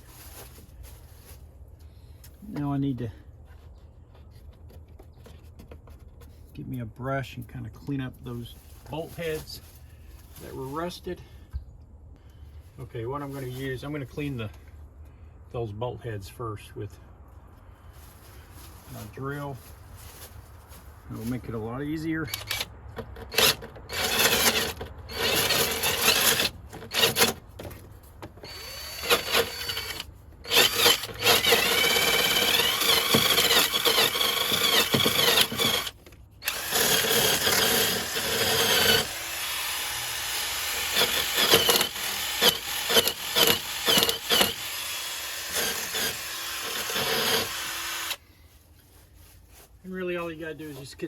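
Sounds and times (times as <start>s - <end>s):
power drill spinning a wire brush: 22.3s - 22.7s, 23.3s - 27.4s, 28.4s - 48.2s.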